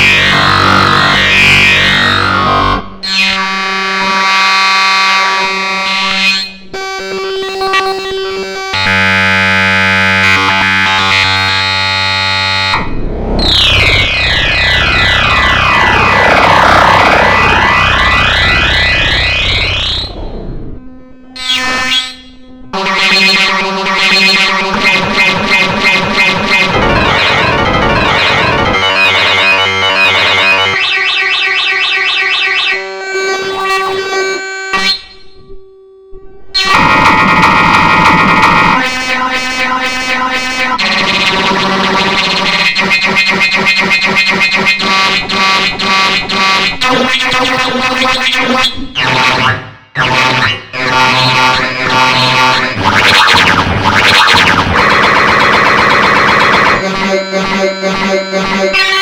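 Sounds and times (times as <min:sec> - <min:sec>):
harsh synthesized tones: 0:00.0 - 0:35.4, 0:36.6 - 0:59.0
buzzy alarm-like chord: 0:08.3 - 0:20.2, 0:21.4 - 0:30.8, 0:49.0 - 0:59.0
falling pitch sweeps: 0:12.6 - 0:30.8, 0:49.0 - 0:59.0.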